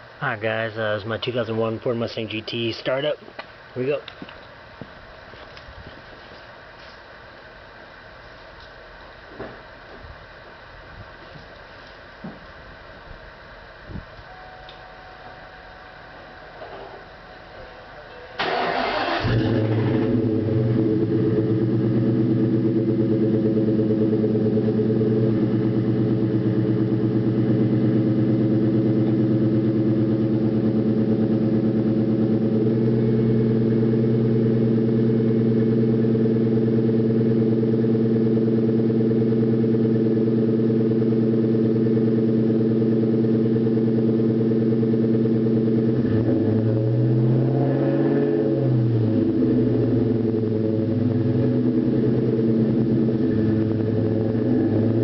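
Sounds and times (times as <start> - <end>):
car engine idling with knock: 19.3 - 46.0.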